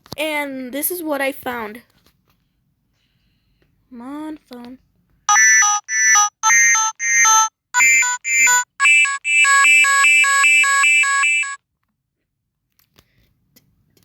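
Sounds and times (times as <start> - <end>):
electronic alert tone from phone: 5.3 - 11.6.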